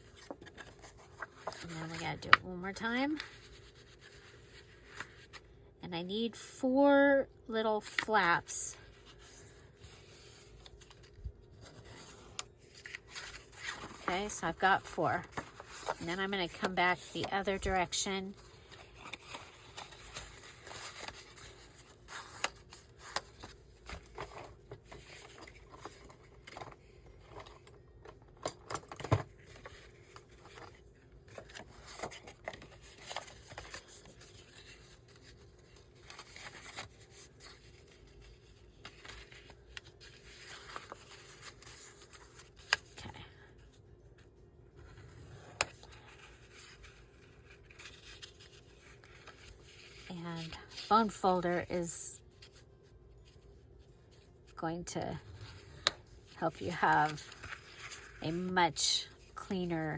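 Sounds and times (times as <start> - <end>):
paper rustling and scraping: 0.0 - 5.5, 8.0 - 27.8, 28.6 - 43.8, 44.8 - 59.9.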